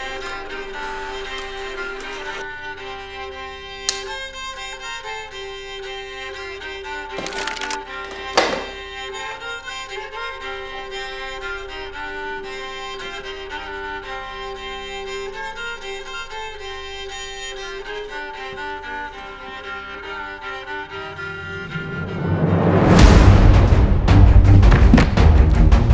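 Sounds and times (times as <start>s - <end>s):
violin and strings music: 0.0s - 25.9s
short sharp hit: 21.6s - 25.9s.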